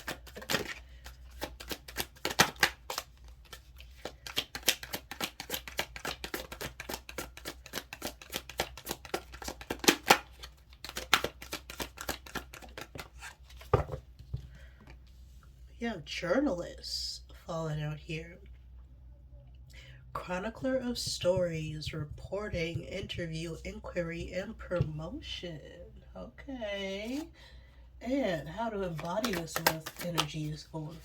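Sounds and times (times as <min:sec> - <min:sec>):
cards being shuffled: 0:00.0 - 0:14.4, 0:28.4 - 0:31.0.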